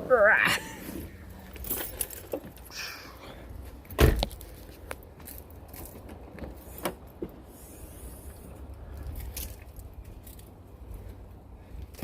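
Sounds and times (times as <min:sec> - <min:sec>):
loud thump: 0:04.0 - 0:04.3.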